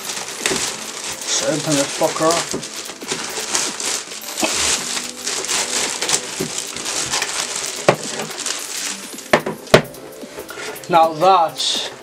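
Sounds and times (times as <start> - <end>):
packaging crinkling and rustling: 0.0 - 11.0
sharp knocks: 9.3 - 10.0.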